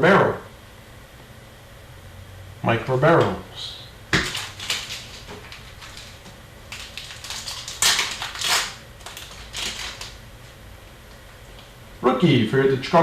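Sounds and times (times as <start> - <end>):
card handling: 4.1 - 10.5
card pack wrappers crinkling: 4.1 - 11.7.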